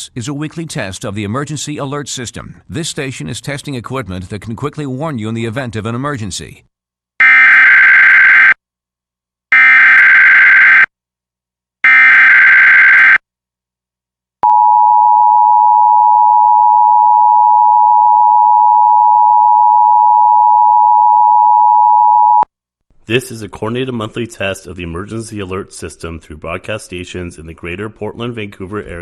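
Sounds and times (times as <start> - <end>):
loud steady dual tone: 14.4 - 22.4.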